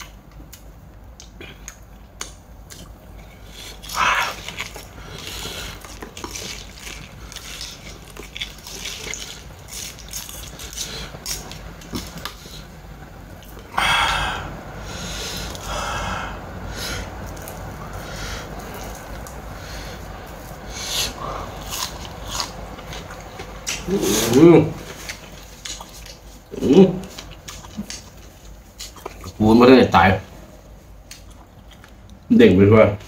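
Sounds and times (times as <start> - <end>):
wet chewing and sucking: 0.0 - 13.7, 15.0 - 29.4
breathy bursts: 13.6 - 17.2.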